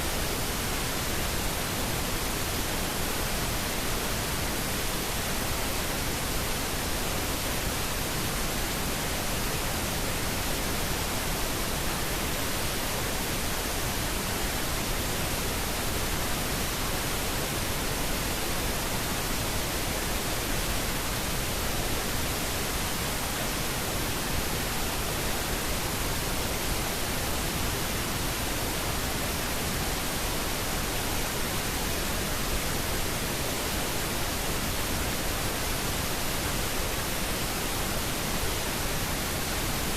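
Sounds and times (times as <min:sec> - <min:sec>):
white noise static hiss: 0:00.0 - 0:39.9.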